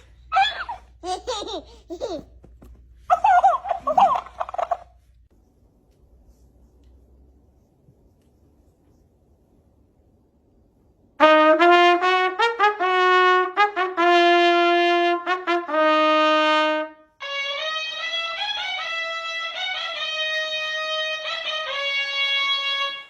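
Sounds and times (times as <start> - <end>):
brass tune: 11.2 - 23.0.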